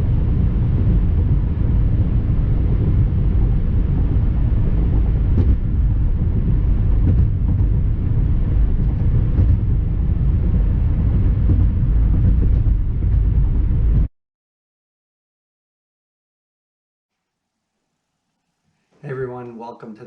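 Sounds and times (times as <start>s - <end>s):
car road and engine rumble: 0.0s - 14.1s.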